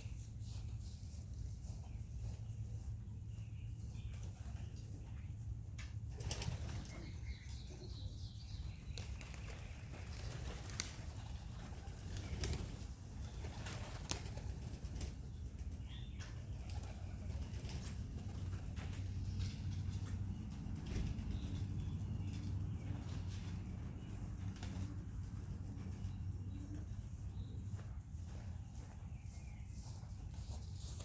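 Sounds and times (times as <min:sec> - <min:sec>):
pigeons flapping wings: 0:06.1 - 0:07.0, 0:08.9 - 0:15.2, 0:16.6 - 0:19.7, 0:24.4 - 0:25.0.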